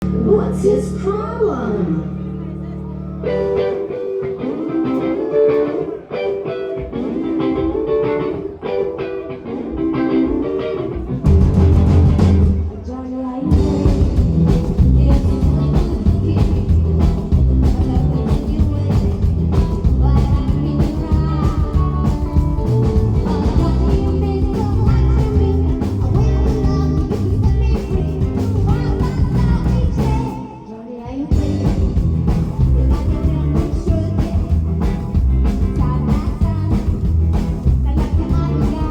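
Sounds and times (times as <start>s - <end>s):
guitar playing alone: 0.0s - 12.9s
rockabilly band playing live: 3.1s - 12.7s, 13.5s - 30.5s, 31.3s - 38.9s.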